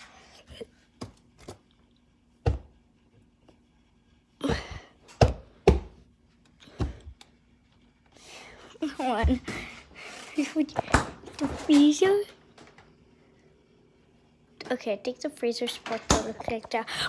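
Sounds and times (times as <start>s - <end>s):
faint steady hum: 0.0s - 17.0s
refrigerator knocks and thunks: 2.4s - 2.7s, 4.4s - 6.0s.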